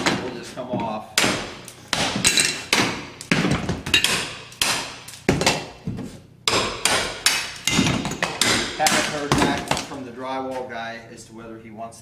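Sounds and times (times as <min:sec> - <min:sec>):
hammer striking ceramic tile: 0:06.5 - 0:09.8.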